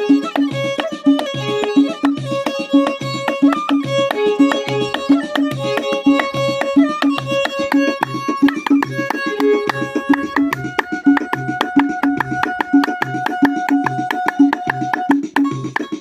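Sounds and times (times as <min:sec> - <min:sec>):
hand-drum beat: 0:00.0 - 0:16.0
held string-like melody: 0:00.0 - 0:16.0.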